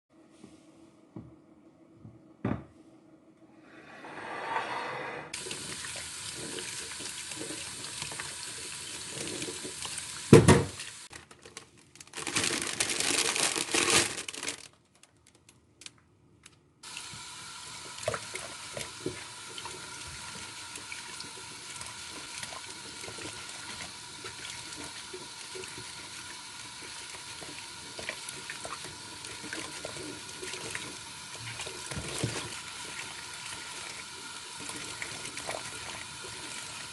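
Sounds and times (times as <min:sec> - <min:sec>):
tap water running into sink: 0:05.4 - 0:11.1, 0:16.8 - 0:36.9.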